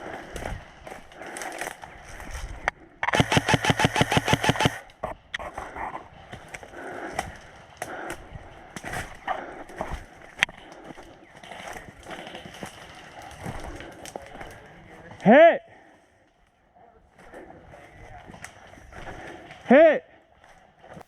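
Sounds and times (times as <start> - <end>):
scattered clicks: 2.6 - 5.5
airsoft rifle full-auto burst: 3.0 - 4.8.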